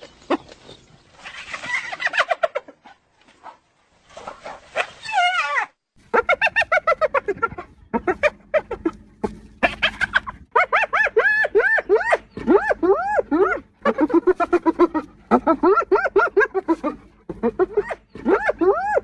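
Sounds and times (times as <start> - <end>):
hyena giggling: 6.0 - 19.0.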